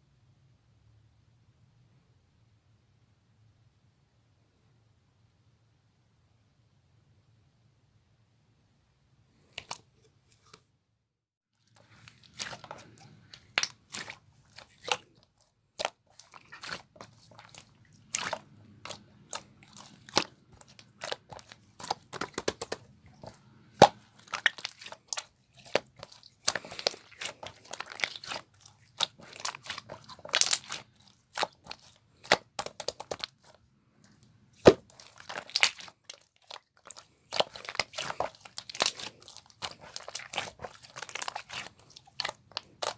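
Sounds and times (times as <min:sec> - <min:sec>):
slime clicking and popping: 0:15.8 - 0:33.5, 0:34.6 - 0:42.9.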